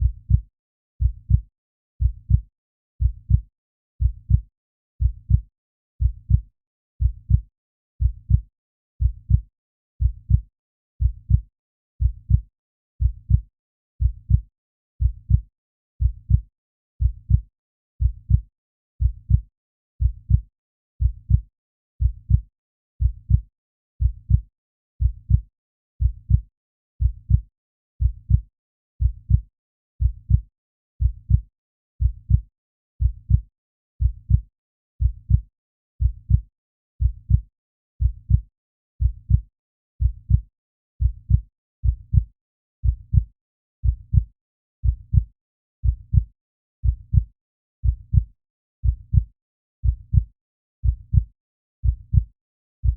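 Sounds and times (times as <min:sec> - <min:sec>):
heartbeat thuds: 0:38.0 - 0:38.4, 0:39.0 - 0:39.4, 0:40.0 - 0:40.4, 0:41.0 - 0:52.9.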